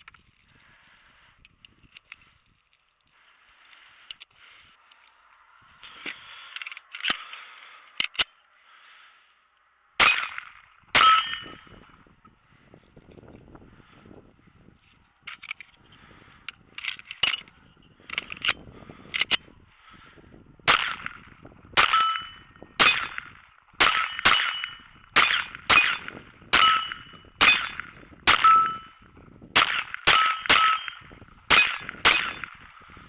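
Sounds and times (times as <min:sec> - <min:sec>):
pistol shots with metallic ring: 0:10.0 - 0:11.7, 0:20.7 - 0:21.1, 0:21.8 - 0:29.0, 0:29.6 - 0:32.7.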